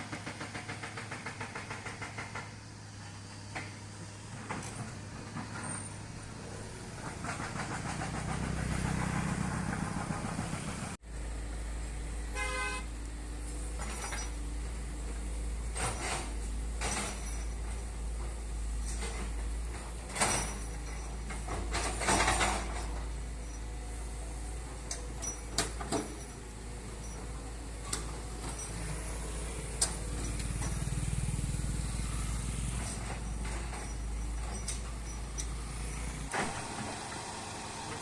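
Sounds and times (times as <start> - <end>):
low engine hum: 2.5 - 38.0
vehicle rumbling past: 2.7 - 20.6, 26.5 - 38.0
short horn toot: 12.3 - 12.9.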